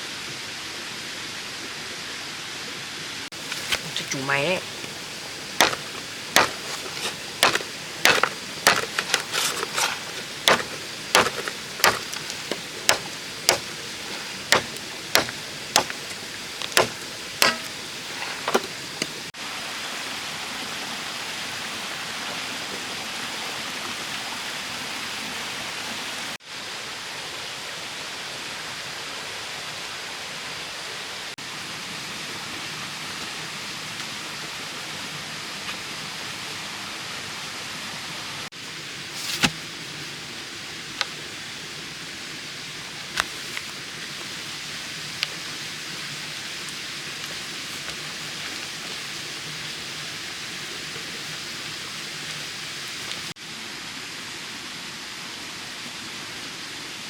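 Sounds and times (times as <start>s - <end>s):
hand tool striking bamboo: 3.4s - 19.2s, 39.2s - 39.7s, 43.1s - 43.8s.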